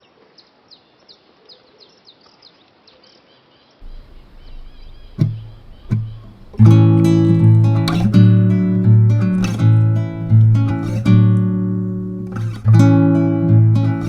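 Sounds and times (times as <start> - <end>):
birds chirping: 3.1 - 14.0
background hiss: 3.8 - 14.0.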